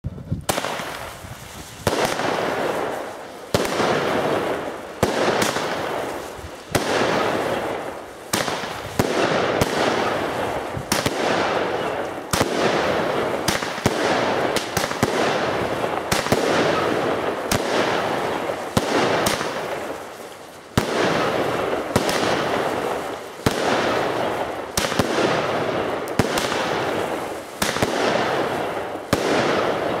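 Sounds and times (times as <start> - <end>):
firework crackling: 0.1 - 30.0
firework launch bangs: 0.4 - 19.9.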